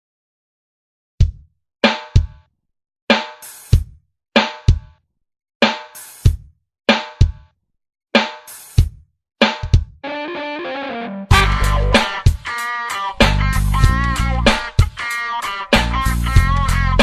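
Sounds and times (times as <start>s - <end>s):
drum kit stop-start hits: 11.3s - 15.1s.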